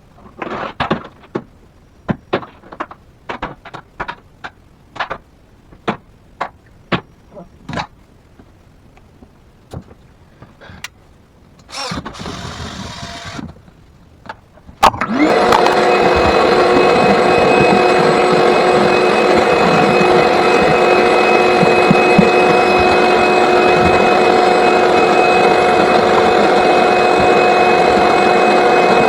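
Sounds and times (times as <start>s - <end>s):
short motor burst: 11.7s - 13.5s
vacuum cleaner running: 11.7s - 13.5s, 15.0s - 29.0s.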